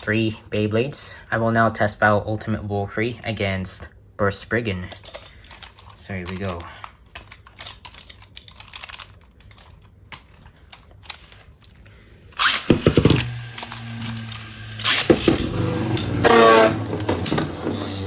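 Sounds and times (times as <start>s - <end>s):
spinning tops whirring: 12.4s - 18.0s.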